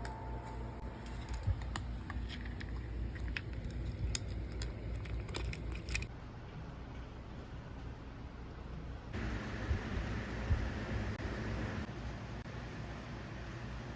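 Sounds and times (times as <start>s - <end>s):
steady low hum: 0.0s - 13.9s
small clicks and crackles: 1.0s - 6.1s.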